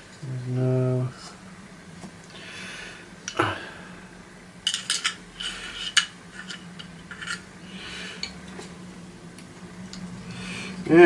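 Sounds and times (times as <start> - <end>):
metal scrape: 4.7 - 7.5.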